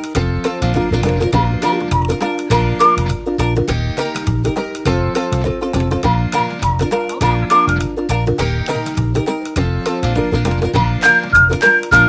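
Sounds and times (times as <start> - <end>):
upbeat music with bass beat: 0.0 - 12.0.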